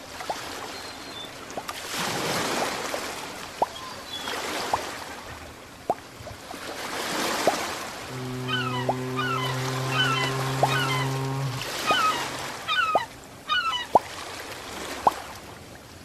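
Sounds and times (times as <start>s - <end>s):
underwater water rushing: 6.8s - 13.2s
rising bubble blips: 8.1s - 12.1s.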